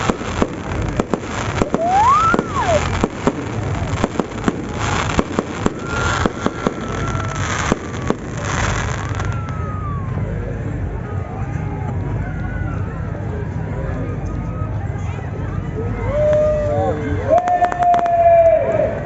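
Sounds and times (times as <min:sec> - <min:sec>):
firework whistle: 0:00.0 - 0:10.1
fireworks bangs and crackles: 0:00.0 - 0:11.2, 0:17.4 - 0:18.6.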